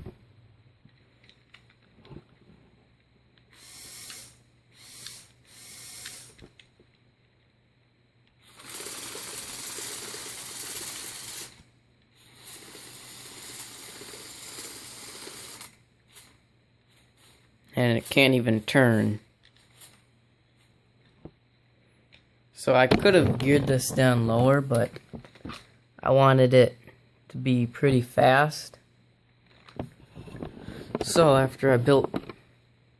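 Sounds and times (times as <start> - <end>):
toy motor gear and track rattle: 3.5 - 6.6, 8.4 - 16.4.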